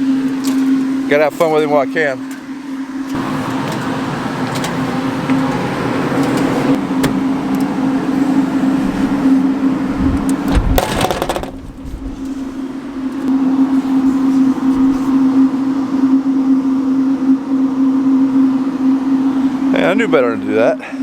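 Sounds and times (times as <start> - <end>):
grain bin machinery humming: 0.0 - 21.0
rushing noise: 4.9 - 15.2
low rumble: 8.5 - 15.2
knocks: 10.0 - 12.4.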